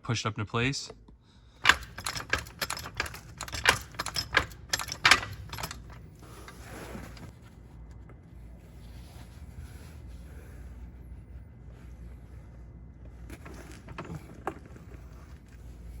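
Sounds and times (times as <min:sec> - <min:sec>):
tools clicking and clattering: 0:01.6 - 0:07.3
soft scraping rustle: 0:06.2 - 0:16.0.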